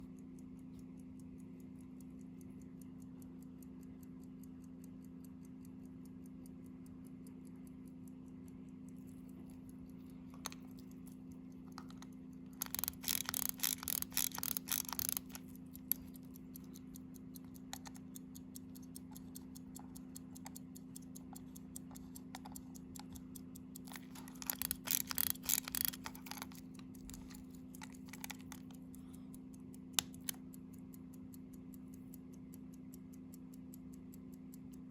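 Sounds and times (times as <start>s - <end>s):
pocket watch ticking: 0.0s - 34.9s
rapid mechanical clicking: 8.8s - 34.9s.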